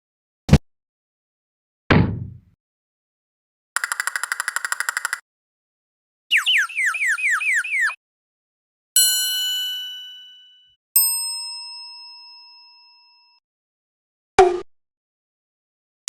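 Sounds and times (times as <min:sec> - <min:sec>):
falling whistle-like chirps: 0:06.3 - 0:08.0
bell-like dings: 0:09.0 - 0:13.4.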